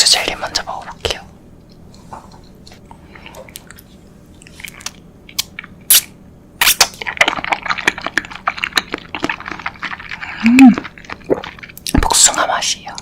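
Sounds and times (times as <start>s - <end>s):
wet chewing: 1.6s - 5.8s, 6.6s - 12.0s.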